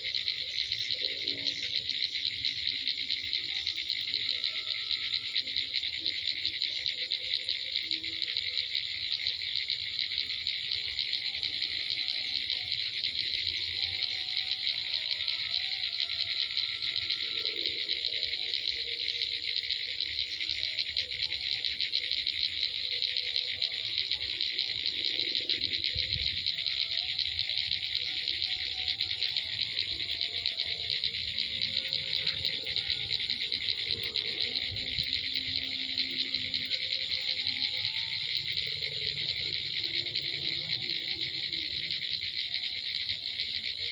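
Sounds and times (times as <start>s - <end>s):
swiftlets twittering: 0.0s - 43.9s.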